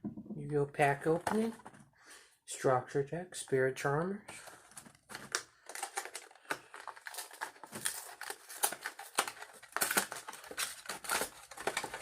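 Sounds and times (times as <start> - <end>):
shrink wrap crinkling: 4.4 - 12.0.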